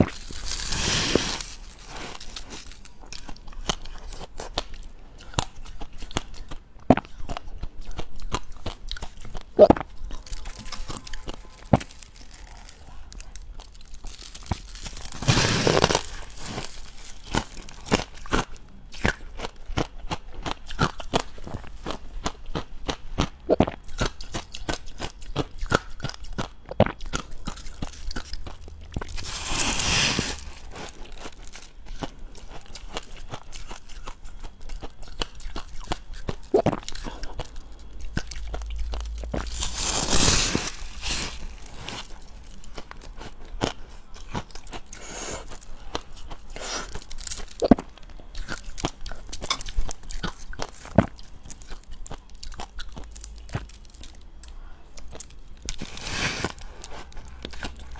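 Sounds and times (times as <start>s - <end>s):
biting and chewing ice crunches: 0.0s - 57.9s.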